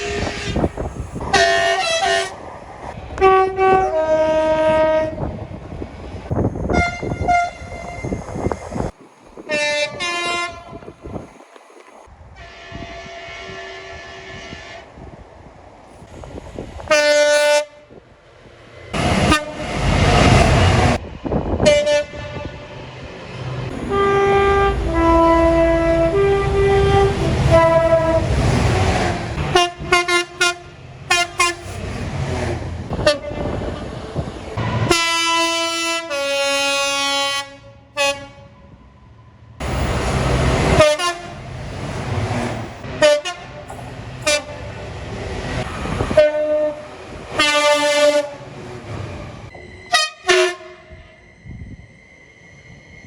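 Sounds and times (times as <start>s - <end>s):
train horn blasts: 0.0s - 2.4s, 3.2s - 5.3s, 6.7s - 8.2s, 9.4s - 11.0s, 12.4s - 15.0s, 16.9s - 17.9s, 19.0s - 21.0s, 21.6s - 22.8s, 23.7s - 31.9s, 32.9s - 33.8s, 34.6s - 38.6s, 40.5s - 41.4s, 42.9s - 44.7s, 46.0s - 48.5s, 49.9s - 51.1s
trains rumbling past: 0.0s - 53.0s.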